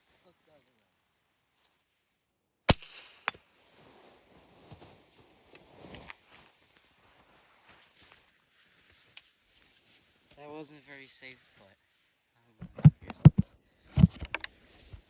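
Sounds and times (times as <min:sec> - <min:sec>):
pellet rifle shot: 0:02.7 - 0:03.4.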